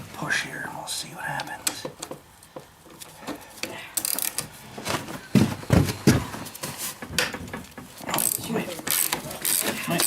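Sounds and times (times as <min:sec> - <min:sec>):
dull thumps: 0:04.8 - 0:08.0.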